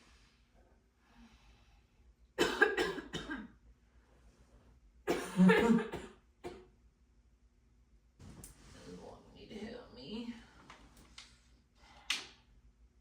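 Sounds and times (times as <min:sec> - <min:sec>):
person coughing harshly: 0:02.4 - 0:03.6, 0:05.1 - 0:06.7.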